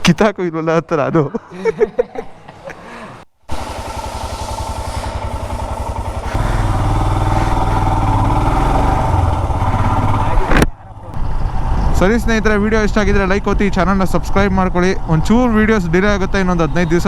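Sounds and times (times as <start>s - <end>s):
motorcycle engine thumping: 3.5s - 11.9s.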